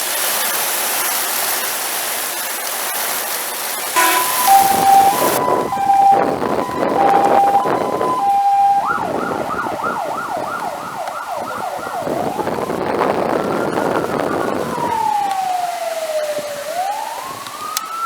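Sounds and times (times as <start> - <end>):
fire engine siren: 4.0 - 18.0.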